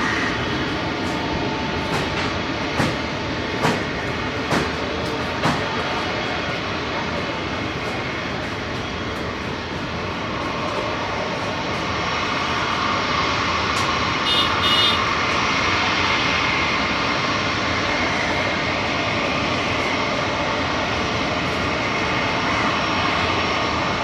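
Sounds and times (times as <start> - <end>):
jet engines whining: 0.0 - 24.0.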